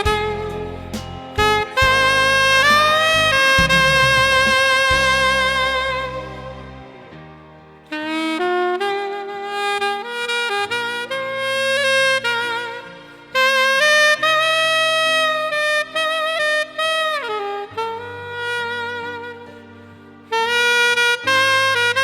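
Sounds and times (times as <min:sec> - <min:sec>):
lower accompaniment: 0:00.0 - 0:09.3
saxophone slow melody: 0:00.0 - 0:22.0.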